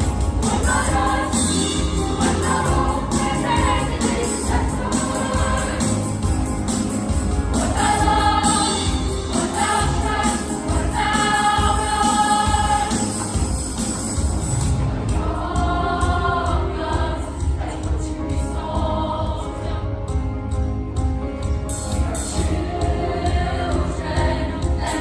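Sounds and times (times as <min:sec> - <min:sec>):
choir singing long notes: 0:00.4 - 0:06.3, 0:07.6 - 0:13.6, 0:15.1 - 0:19.8.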